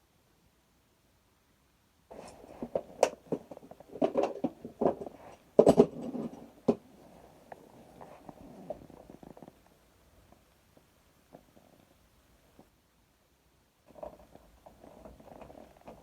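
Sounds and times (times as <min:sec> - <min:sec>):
clicks knocks and scraping: 0:02.1 - 0:06.8
faint rustling: 0:02.1 - 0:12.7.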